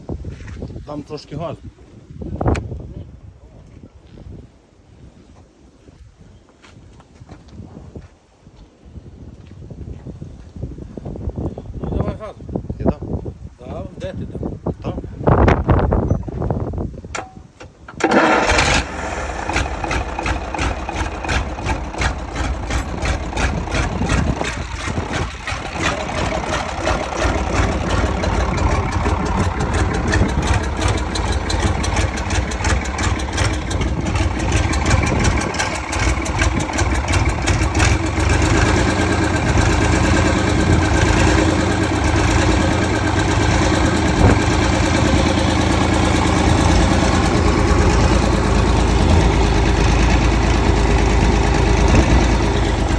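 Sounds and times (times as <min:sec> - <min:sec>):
engine starting and idling: 0:17.2 - 0:52.9.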